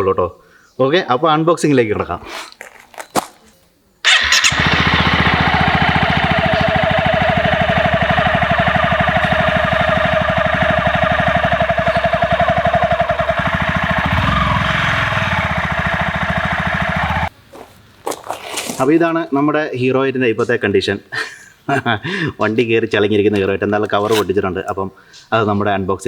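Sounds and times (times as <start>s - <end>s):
motorcycle engine running: 4.1s - 17.3s.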